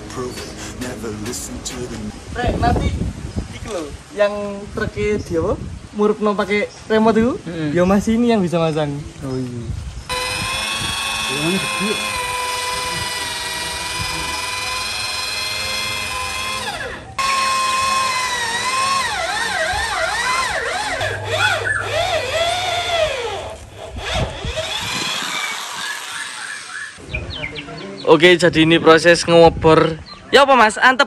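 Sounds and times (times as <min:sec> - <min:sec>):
electric drill whining: 0:10.1 - 0:27.0.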